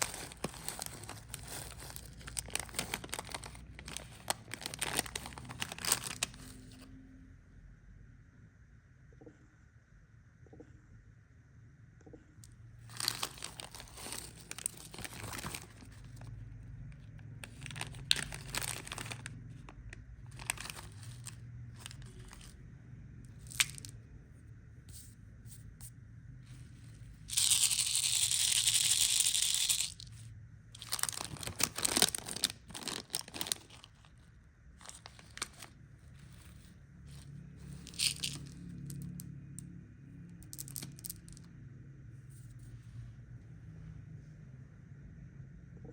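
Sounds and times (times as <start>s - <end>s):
packaging tearing: 0.0s - 6.7s, 12.9s - 16.3s, 17.4s - 19.3s, 20.3s - 22.5s, 30.8s - 34.1s, 34.8s - 35.8s, 37.8s - 38.6s
candy wrapper crinkling: 0.0s - 6.8s, 12.9s - 16.4s, 17.0s - 22.6s, 23.3s - 24.0s, 27.2s - 30.2s, 30.8s - 39.2s, 40.5s - 41.4s.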